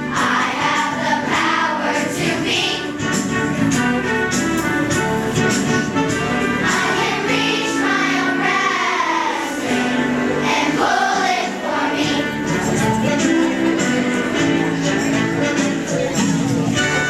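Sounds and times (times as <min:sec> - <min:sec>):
choir singing: 0:00.0 - 0:03.1, 0:06.6 - 0:16.0.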